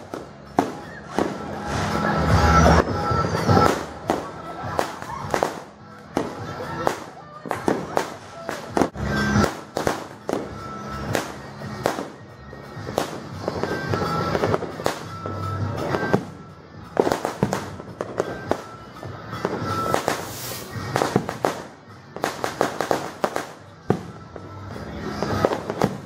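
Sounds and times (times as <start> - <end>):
fireworks bangs and crackles: 0.0 - 26.0
music: 0.0 - 26.0.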